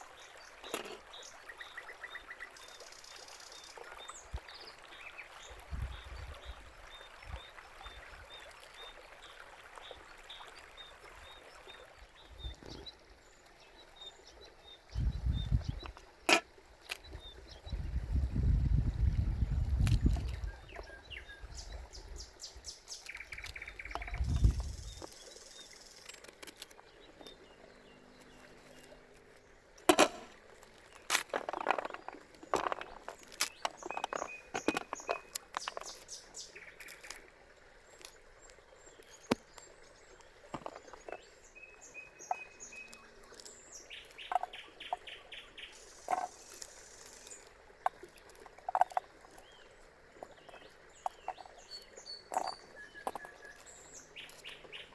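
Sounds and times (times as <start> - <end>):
small birds chirping and trilling: 0.1 - 16.2, 17.0 - 29.4, 30.9 - 37.2, 37.9 - 47.6, 48.2 - 54.9
sharp knocks and clicks: 29.9 - 30.4, 31.1 - 36.0.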